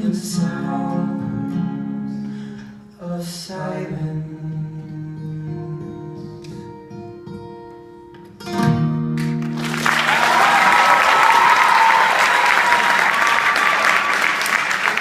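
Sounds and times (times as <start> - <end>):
acoustic guitar playing: 0.0 - 9.8
audience applause: 9.4 - 15.0.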